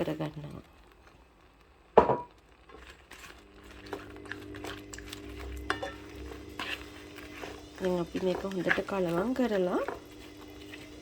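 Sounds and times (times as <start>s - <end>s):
spoon stirring in a pot: 2.2s - 11.0s.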